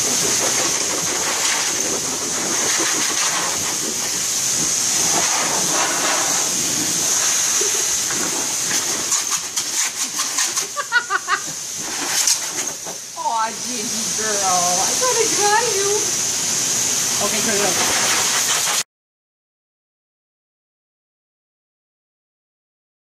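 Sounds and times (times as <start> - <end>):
hair dryer hissing: 0.0 - 18.8.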